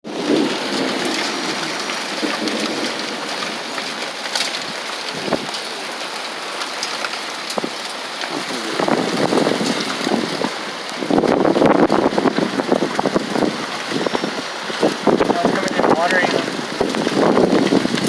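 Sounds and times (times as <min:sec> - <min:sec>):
hail and rain falling: 0:00.0 - 0:18.0
loud hailstone hits: 0:00.1 - 0:06.0.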